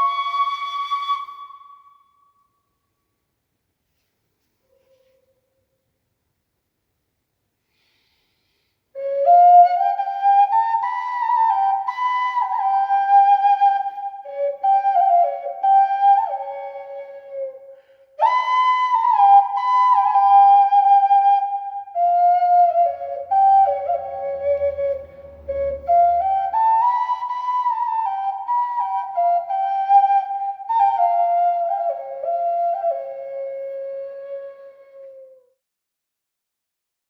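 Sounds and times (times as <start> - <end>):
clay whistle melody: 0.0 - 2.4, 9.0 - 35.5.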